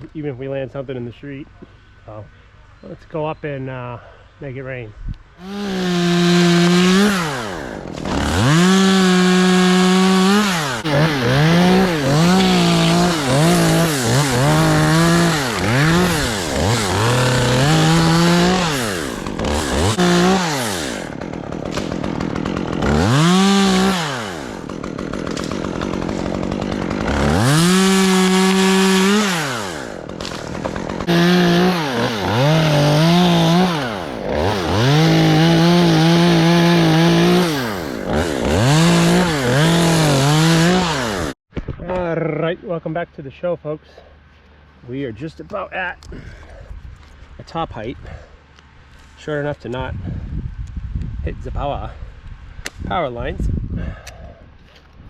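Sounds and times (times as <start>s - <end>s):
chainsaw revving: 5.4s - 41.4s.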